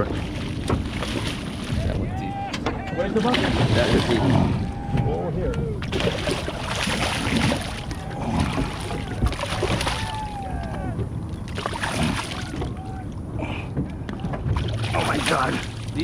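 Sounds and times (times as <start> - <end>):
boat engine low rumble: 0.0 - 16.0
water noise: 0.0 - 16.0
wind: 0.0 - 16.0
faint gliding calls: 4.2 - 14.9.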